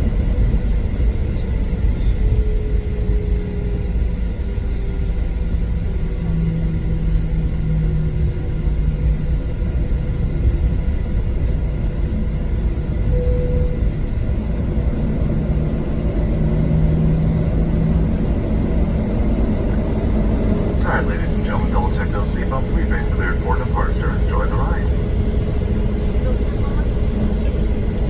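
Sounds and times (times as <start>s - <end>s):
airplane cabin low rumble: 0.0s - 28.0s
faint steady tones: 12.2s - 28.0s.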